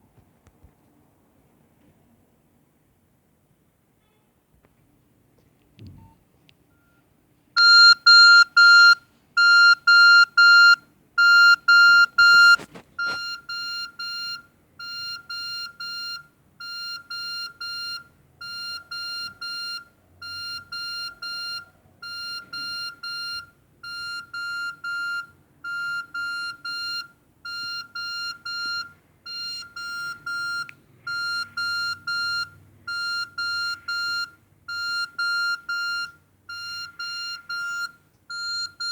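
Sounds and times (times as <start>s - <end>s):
mobile phone beeping ringtone: 7.6s - 38.9s.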